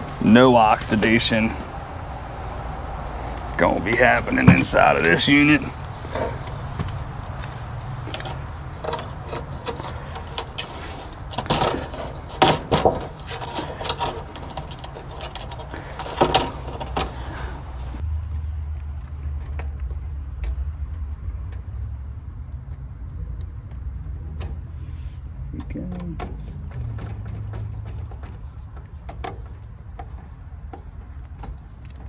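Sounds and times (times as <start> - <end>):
metal tools clinking: 0.0 - 18.0.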